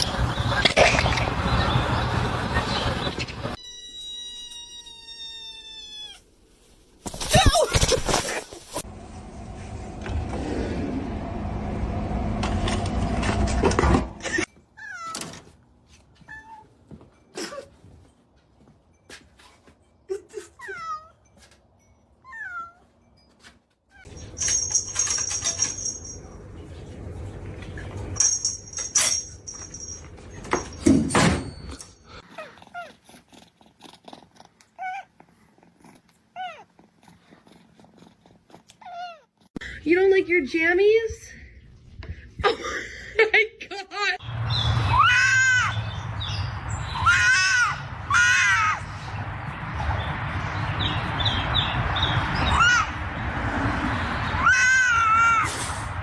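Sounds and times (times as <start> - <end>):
cat meowing: 3.6 - 6.3.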